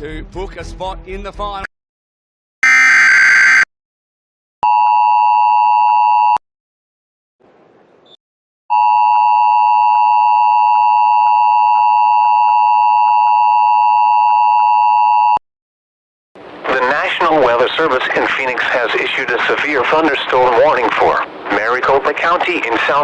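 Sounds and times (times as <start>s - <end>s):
two-tone electronic alert tone: 2.6s - 3.7s.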